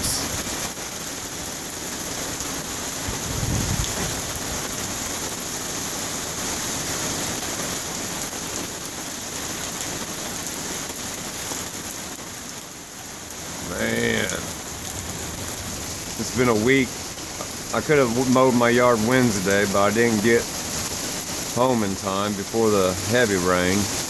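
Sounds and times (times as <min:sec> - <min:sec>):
heavy rain pouring: 0:00.0 - 0:24.0
low rumble: 0:14.2 - 0:19.2.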